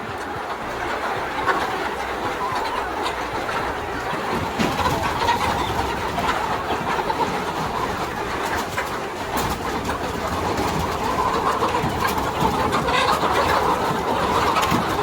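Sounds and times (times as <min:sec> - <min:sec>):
flock of chickens calling: 0:00.0 - 0:15.0.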